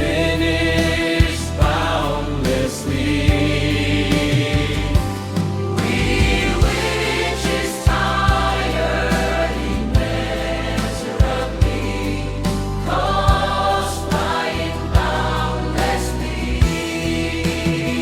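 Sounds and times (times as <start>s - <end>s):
bass line: 0.0s - 18.0s
choir-like synth pads: 0.0s - 18.0s
drum hits: 3.3s - 15.4s.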